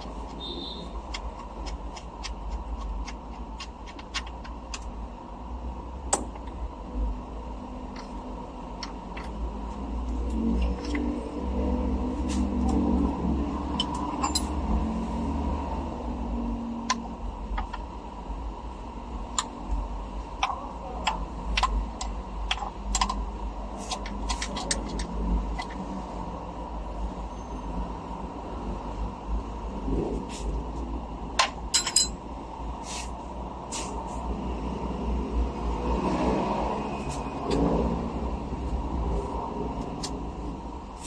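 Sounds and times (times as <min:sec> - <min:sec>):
metal tools clinking on engine parts: 0:13.7 - 0:14.7, 0:31.6 - 0:32.2.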